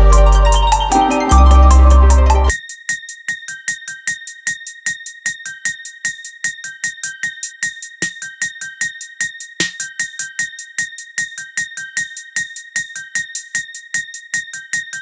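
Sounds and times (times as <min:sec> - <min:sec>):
ticking beat: 0:09.5 - 0:10.4.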